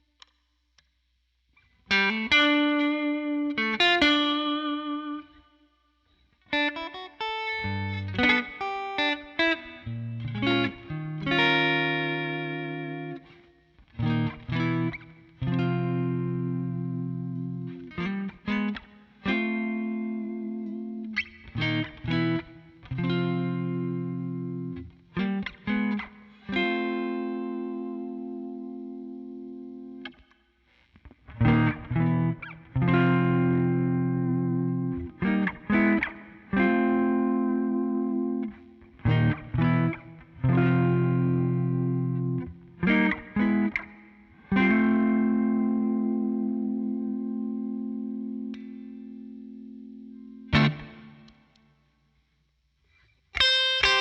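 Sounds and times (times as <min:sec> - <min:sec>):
electric guitar ringing chords: 0:06.4 - 0:30.3, 0:31.2 - 0:51.5, 0:53.4 - 0:54.0
electric guitar chord stabs: 0:06.6 - 0:13.4, 0:31.3 - 0:51.5.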